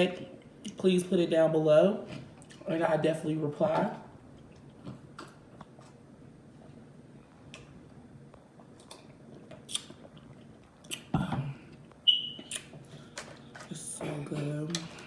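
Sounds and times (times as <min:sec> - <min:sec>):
person chewing food: 0:08.4 - 0:11.1
bite or mouth noise: 0:09.6 - 0:10.1, 0:10.8 - 0:11.3
wet mouth clicks: 0:09.6 - 0:11.1, 0:12.4 - 0:12.8.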